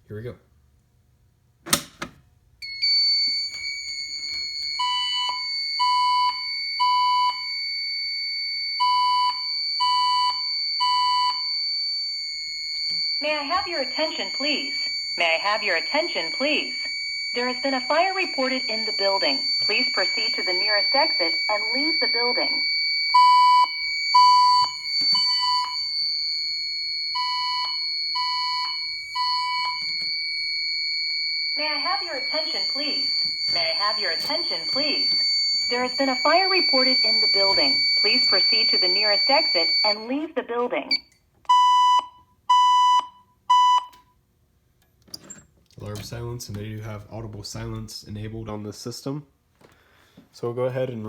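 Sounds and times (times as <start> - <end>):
evacuation alarm beeps: 2.6 - 44.2
spoken fire message: 13.2 - 16.8, 17.4 - 22.6, 31.6 - 41.0
steady high-pitched tone: 13.2 - 22.7, 31.6 - 40.2.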